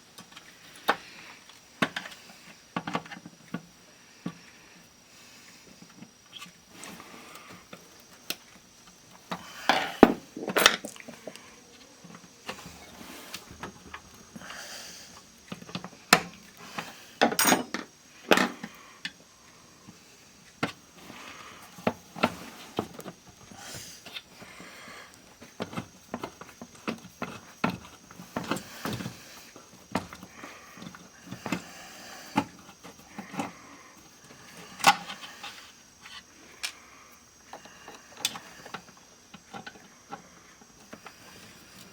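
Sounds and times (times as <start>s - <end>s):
small tools clicking and scraping: 15.1s - 19.2s, 25.1s - 36.8s, 37.5s - 41.9s.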